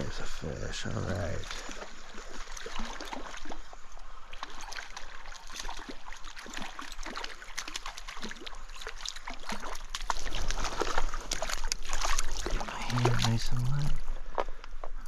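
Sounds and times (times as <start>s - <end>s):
stream water running: 0.0s - 15.0s
water splashes from fish: 1.0s - 14.2s.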